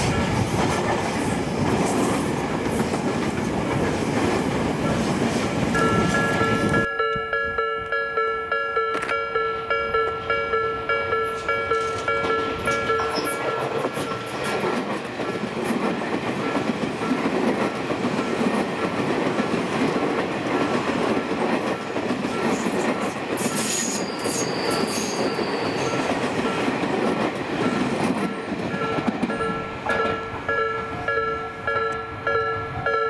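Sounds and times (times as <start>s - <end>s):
pulsing crossing warning bell: 5.7s - 14.7s, 23.4s - 26.8s, 27.6s - 33.0s
high wheel squeal: 23.4s - 26.6s.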